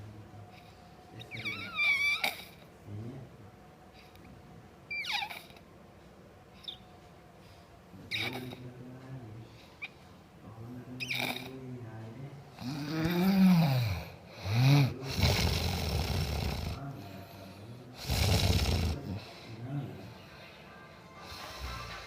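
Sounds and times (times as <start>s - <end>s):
person snoring: 12.6s - 19.6s.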